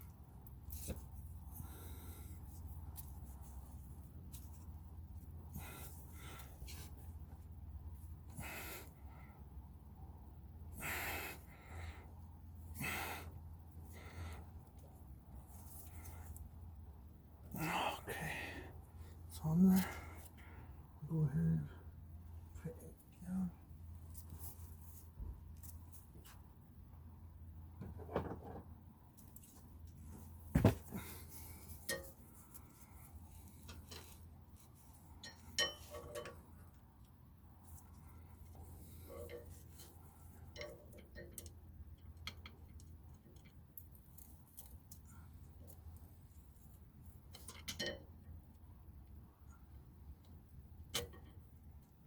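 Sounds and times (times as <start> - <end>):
low steady hum: 0.0 - 52.0
man breathing hard: 8.3 - 9.4, 10.7 - 14.6, 17.5 - 19.2.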